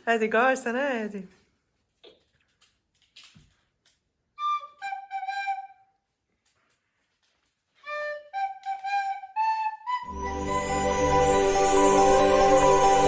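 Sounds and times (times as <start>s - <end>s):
child playing flute melody: 4.4s - 6.1s, 7.8s - 13.0s.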